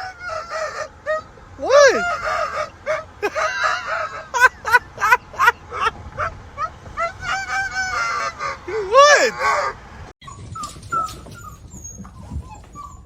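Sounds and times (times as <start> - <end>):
animal calling: 0.0 - 13.0.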